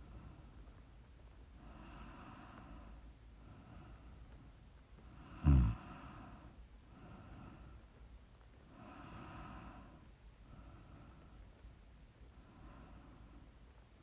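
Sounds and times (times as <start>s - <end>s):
breathing: 1.6s - 13.8s
woman snoring: 5.2s - 6.2s.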